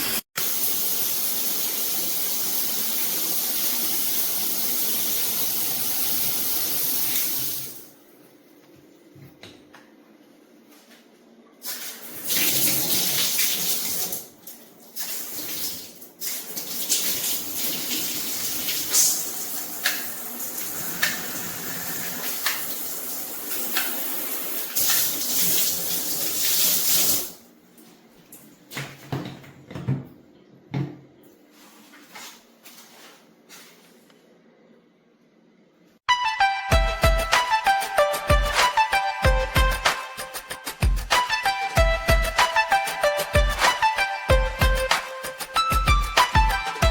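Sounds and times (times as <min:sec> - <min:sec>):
water spraying from shower head: 0:11.6 - 0:14.2, 0:15.0 - 0:27.4.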